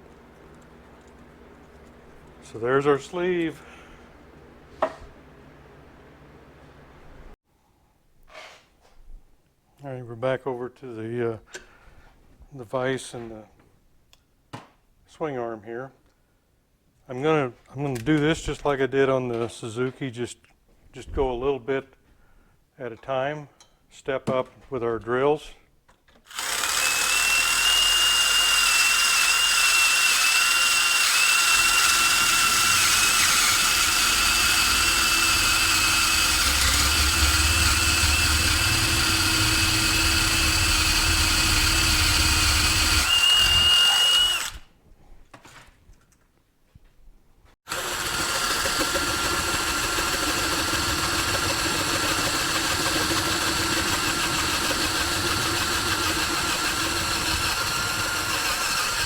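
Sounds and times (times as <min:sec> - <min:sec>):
electric drill boring steel: 0:26.3 - 0:44.7, 0:47.7 - 0:59.0.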